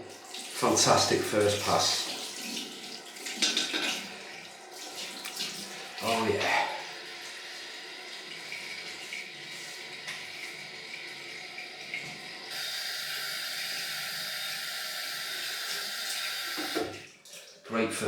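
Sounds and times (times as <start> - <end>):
tap water running into sink: 0.0 - 17.6.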